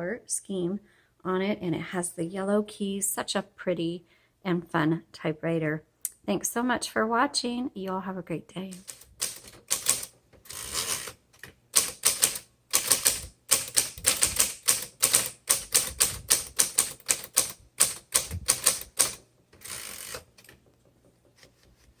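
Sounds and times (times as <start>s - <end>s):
typewriter rasping: 8.7s - 11.2s, 11.8s - 20.6s
typewriter key strikes: 8.8s - 10.1s, 11.8s - 20.2s.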